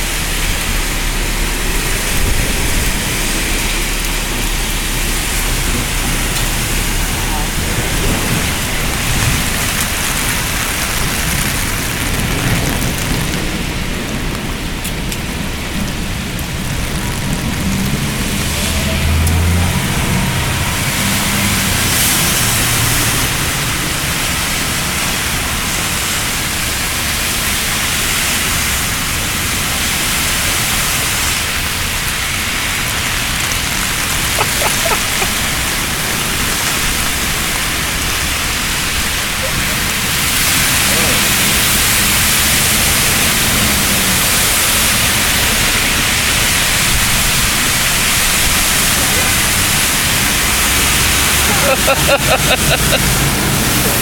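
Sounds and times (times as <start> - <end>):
low rumbling: 0.0 - 25.7
rushing floodwater: 0.0 - 54.0.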